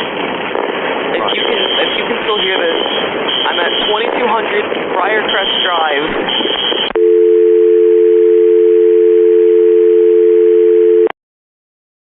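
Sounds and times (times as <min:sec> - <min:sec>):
woman's voice: 0:01.2 - 0:02.8
telephone dial tone: 0:06.9 - 0:11.1.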